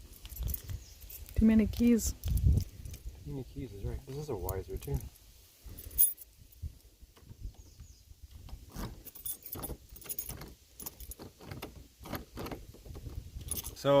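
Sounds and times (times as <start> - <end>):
keys jangling: 0.2 - 1.3, 5.8 - 6.3, 8.9 - 11.6, 13.4 - 13.9.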